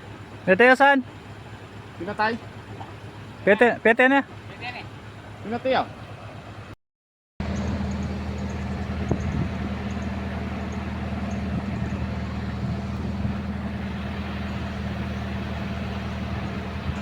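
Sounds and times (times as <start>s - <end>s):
diesel engine idling: 0.0s - 6.8s, 7.4s - 17.0s
engine knock: 7.4s - 17.0s.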